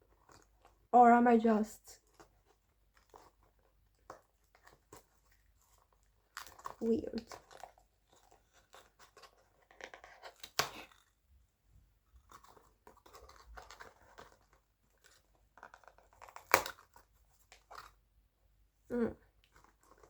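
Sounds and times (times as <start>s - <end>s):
plastic packaging tearing and crinkling: 4.5s - 11.1s, 12.2s - 18.0s.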